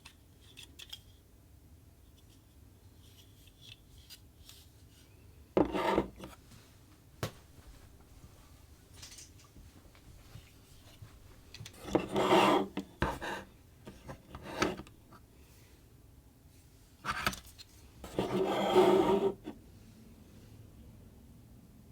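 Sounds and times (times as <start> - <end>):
rubbing and scraping of packaging: 11.7 - 14.9, 17.1 - 19.6.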